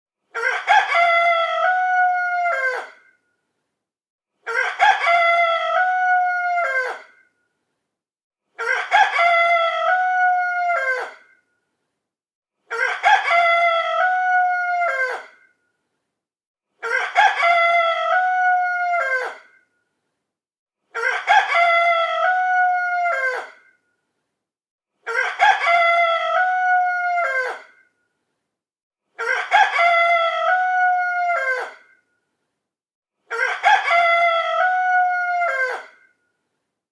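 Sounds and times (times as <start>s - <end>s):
rooster crowing: 0.4s - 2.9s.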